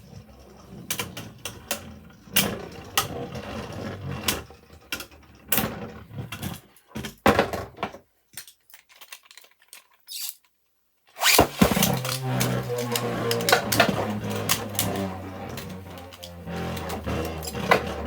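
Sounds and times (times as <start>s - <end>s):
spinning tops whirring and scraping: 11.2s - 18.0s.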